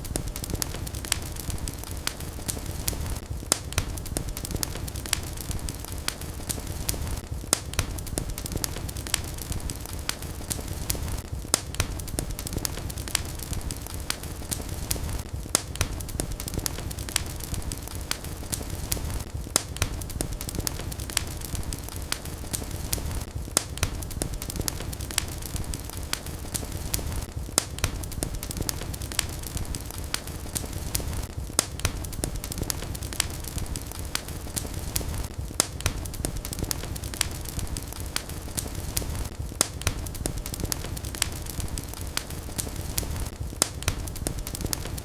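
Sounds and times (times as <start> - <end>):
wood fire crackling: 0.0 - 45.0.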